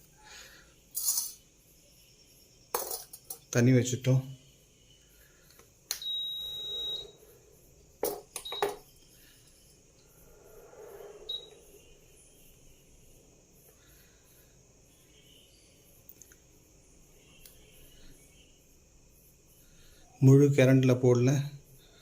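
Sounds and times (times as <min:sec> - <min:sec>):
induction stove beeping: 0:05.9 - 0:07.2, 0:08.4 - 0:08.8, 0:11.3 - 0:11.6.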